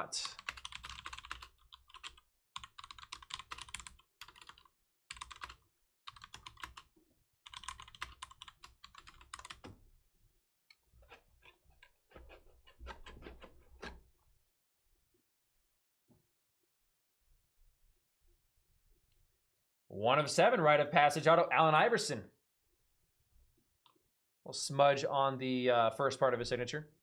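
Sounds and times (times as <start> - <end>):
typing on computer keyboard: 0.3 - 9.8.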